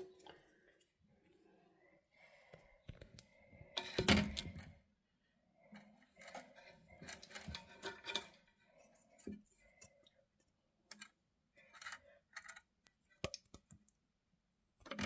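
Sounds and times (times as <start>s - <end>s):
hard parts clicking and clattering: 3.8s - 4.7s, 5.8s - 8.5s.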